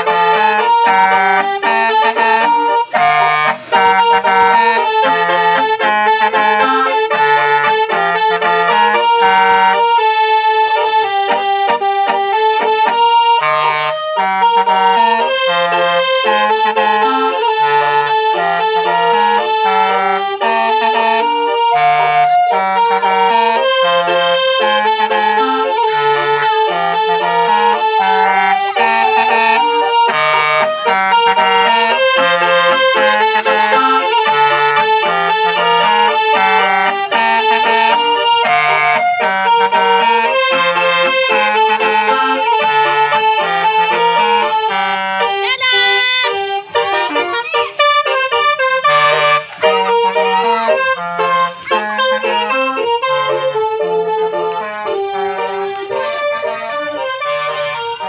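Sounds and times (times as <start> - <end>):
instrumental accordion-like music: 0.0 - 58.0.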